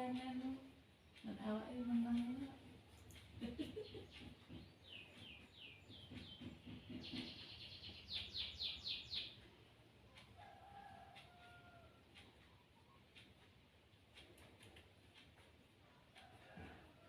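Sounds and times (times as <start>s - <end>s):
small bird chirping: 3.8s - 9.6s.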